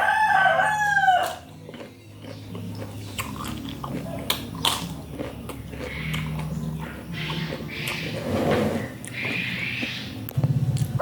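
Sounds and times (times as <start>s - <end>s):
person chewing vegetables: 1.2s - 8.2s.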